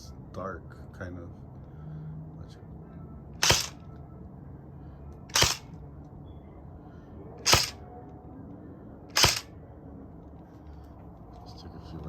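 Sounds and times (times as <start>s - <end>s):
airsoft gun shots: 3.4s - 3.8s, 5.3s - 5.7s, 7.4s - 7.8s, 9.1s - 9.5s.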